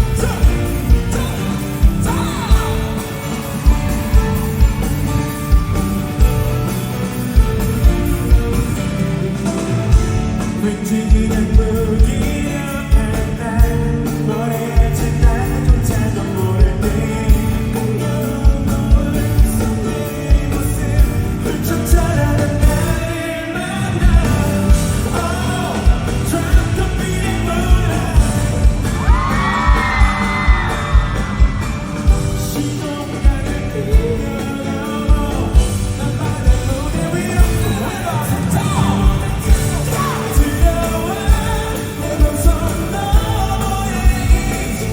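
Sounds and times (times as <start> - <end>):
live pop song through pa: 0.0 - 44.9
male singer: 0.0 - 44.9
shouting or whooping: 28.9 - 31.9
high sliding vocal line: 36.0 - 43.9.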